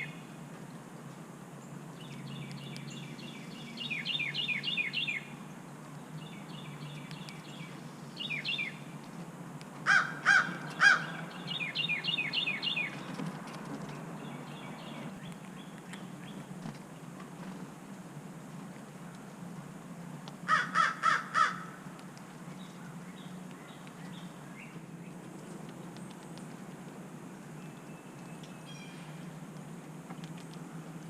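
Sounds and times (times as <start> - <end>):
wren singing: 2.0 - 5.3, 6.2 - 8.8, 10.6 - 13.1
crow cawing: 9.8 - 11.2, 20.5 - 21.8.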